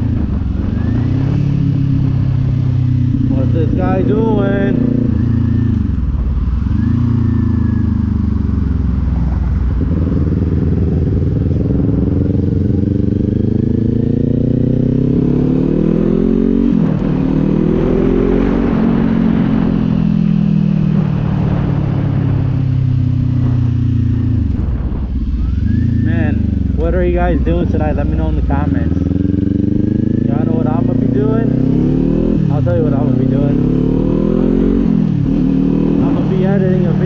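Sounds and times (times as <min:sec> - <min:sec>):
motorcycle engine accelerating: 0:00.0 - 0:37.0.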